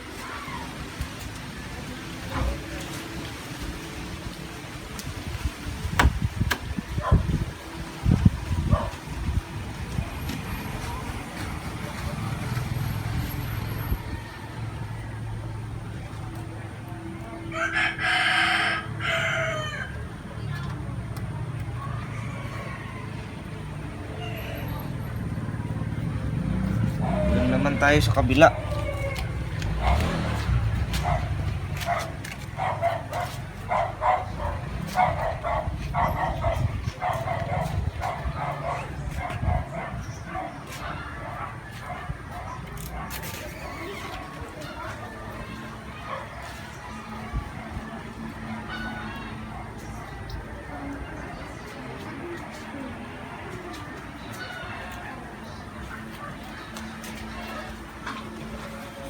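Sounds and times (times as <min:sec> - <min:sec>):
sharp knocks: 0:06.0 - 0:06.7
vehicle engine drone: 0:23.0 - 0:32.6
dog yapping: 0:31.0 - 0:44.3.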